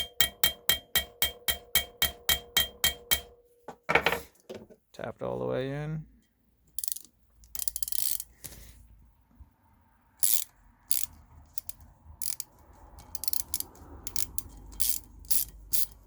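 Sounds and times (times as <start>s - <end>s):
ratchet clicking: 6.8s - 8.3s, 10.2s - 16.0s.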